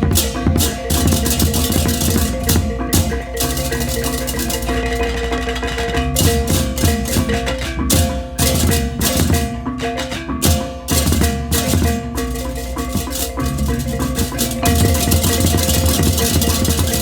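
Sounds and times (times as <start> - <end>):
cymbals clashing: 0.0 - 17.0
drum strokes: 0.0 - 17.0
ringing gong tones: 10.5 - 17.0.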